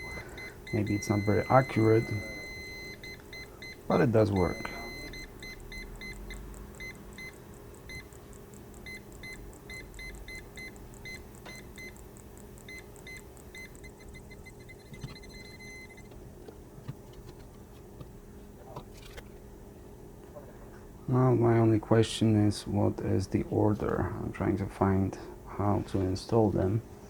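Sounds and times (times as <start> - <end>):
parking sensor beeping: 0.0 - 8.2, 8.8 - 12.0, 12.6 - 16.2.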